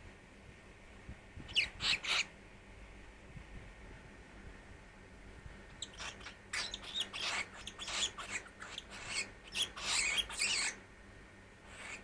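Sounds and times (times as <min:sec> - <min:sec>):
cockatiel chattering: 0:01.5 - 0:02.3, 0:05.8 - 0:10.8, 0:11.7 - 0:12.0.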